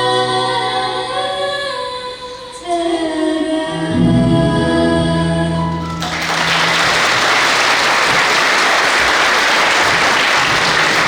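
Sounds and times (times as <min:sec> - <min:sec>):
audience applause: 0:05.8 - 0:11.0.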